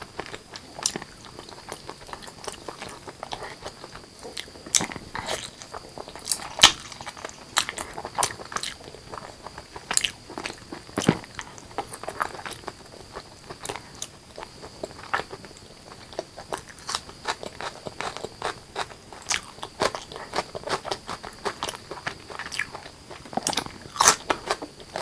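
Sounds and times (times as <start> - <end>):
close chewing and crunching: 0.0 - 25.0.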